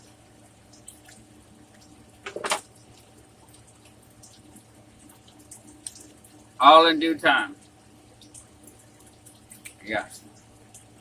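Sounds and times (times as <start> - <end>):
wet chewing and mouth clicks: 5.1 - 6.4, 8.2 - 9.8.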